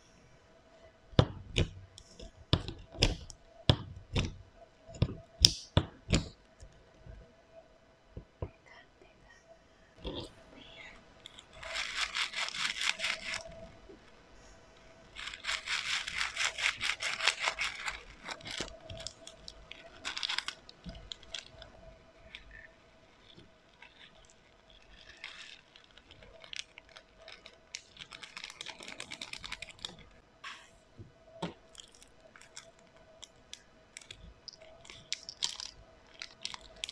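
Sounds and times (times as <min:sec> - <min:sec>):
slime crackling and popping: 0:01.2 - 0:06.4, 0:15.2 - 0:30.2, 0:31.4 - 0:36.9.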